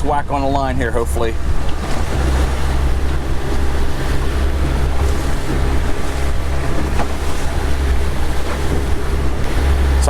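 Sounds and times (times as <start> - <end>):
boat engine humming: 0.0 - 10.0
water washing along hull: 0.0 - 10.0
wind on microphone: 0.0 - 10.0.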